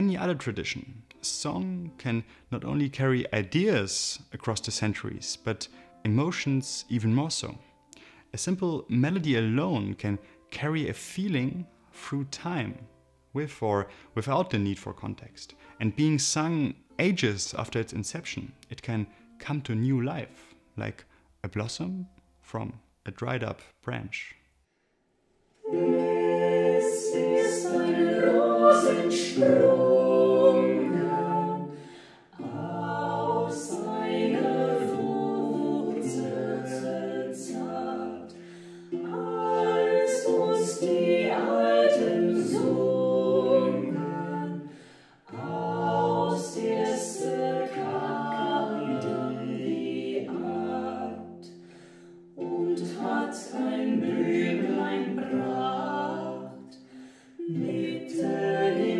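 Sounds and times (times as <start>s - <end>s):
singers breathing: 7.7s - 8.3s, 31.7s - 32.4s, 38.3s - 39.0s, 44.6s - 45.3s, 51.5s - 52.3s, 56.6s - 57.4s
choir singing a carol: 25.6s - 58.9s.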